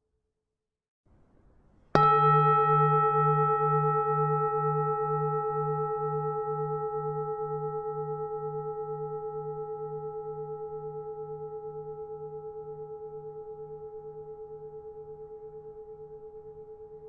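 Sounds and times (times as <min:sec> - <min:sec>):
temple bell ringing: 0:02.0 - 0:10.1.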